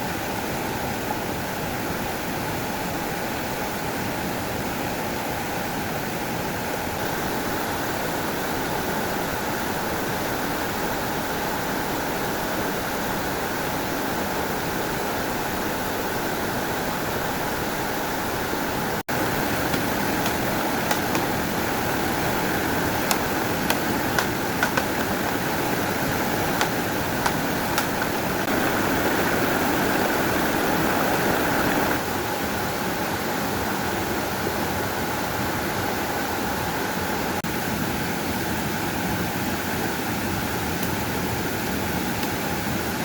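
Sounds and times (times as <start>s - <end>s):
faint clicks: 19.1s - 30.6s
stream water rushing: 19.1s - 32.0s.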